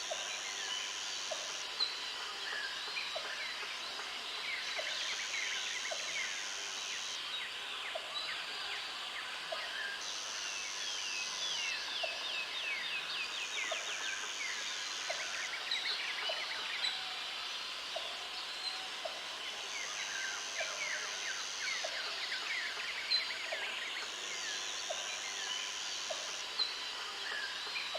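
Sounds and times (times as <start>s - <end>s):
insect high buzz: 0.0s - 27.9s.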